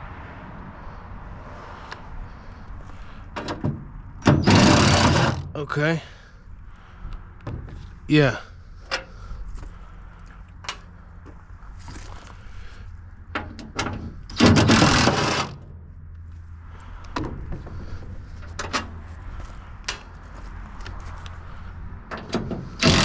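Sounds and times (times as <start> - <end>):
metal parts clicking and knocking: 3.4 - 5.5, 13.4 - 15.6, 22.1 - 23.0
rushing scraping burst: 4.2 - 5.8, 14.3 - 15.6, 22.8 - 23.0.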